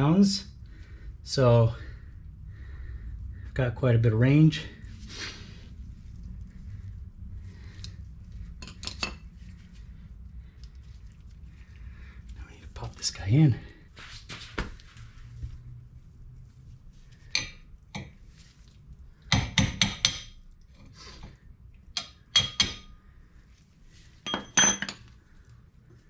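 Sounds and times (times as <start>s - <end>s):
steel tool tapping metal pin: 19.3s - 20.3s, 22.0s - 22.9s.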